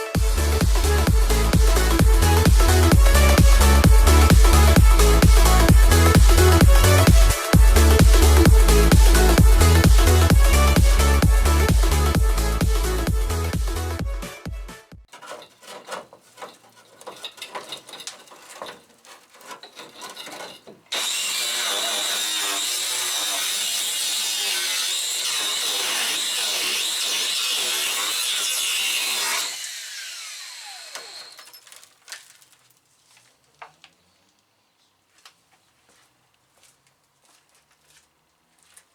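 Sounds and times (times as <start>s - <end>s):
angle grinder cutting steel: 15.1s - 31.8s.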